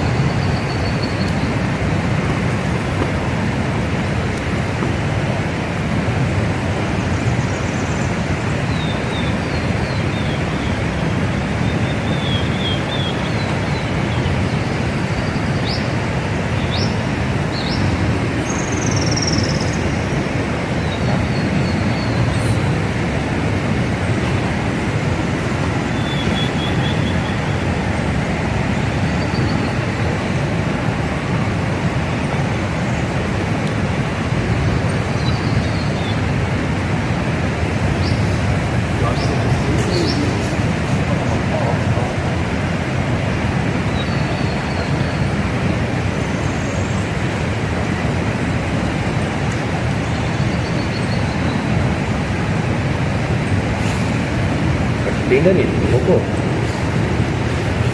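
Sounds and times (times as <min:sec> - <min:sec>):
birds chirping: 0:00.0 - 0:03.5, 0:06.5 - 0:30.5, 0:35.0 - 0:36.6, 0:37.3 - 0:42.8, 0:43.8 - 0:47.3, 0:49.0 - 0:52.2, 0:53.2 - 0:57.9
river rapids rushing: 0:00.0 - 0:57.9.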